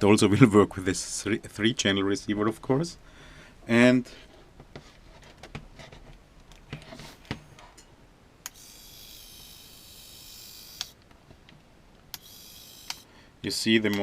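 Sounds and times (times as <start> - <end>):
electric winch motor whirring: 8.5 - 11.0, 12.2 - 13.1.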